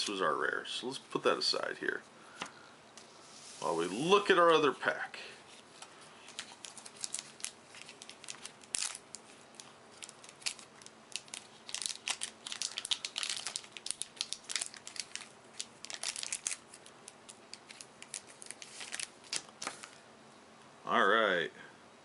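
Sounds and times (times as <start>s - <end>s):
plastic wrapper crinkling and tearing: 5.7s - 20.0s.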